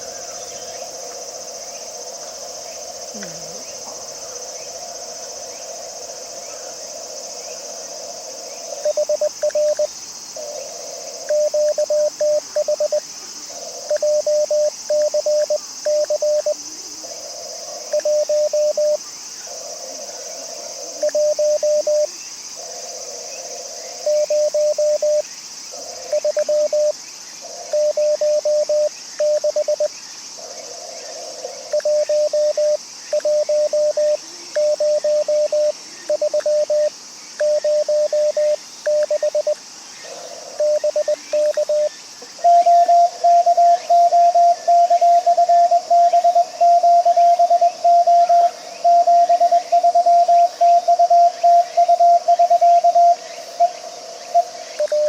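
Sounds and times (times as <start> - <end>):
morse code tones: 8.9 - 9.9, 11.3 - 13.0, 13.9 - 16.6, 18.0 - 19.0, 21.0 - 22.1, 24.1 - 25.2, 26.2 - 26.9, 27.8 - 29.9, 31.8 - 39.6, 40.6 - 41.9.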